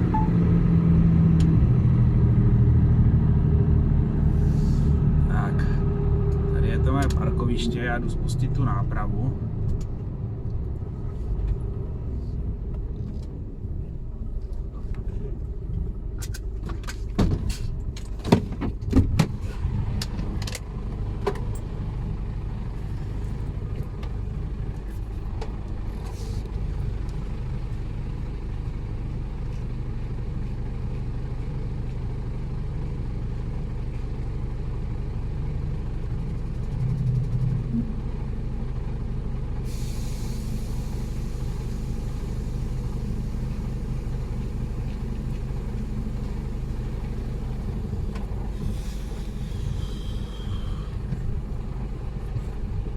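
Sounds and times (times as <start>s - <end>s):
diesel truck engine idling: 0.0s - 52.9s
hiss: 39.7s - 43.6s, 48.5s - 51.0s.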